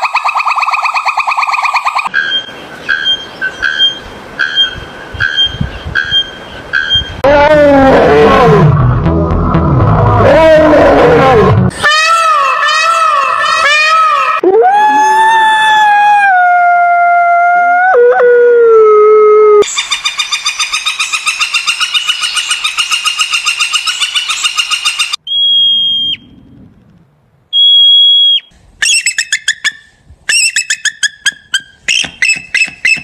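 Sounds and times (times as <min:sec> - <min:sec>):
howl-like animal call: 0:10.2 - 0:19.6
high whistle-like tones: 0:27.5 - 0:28.5.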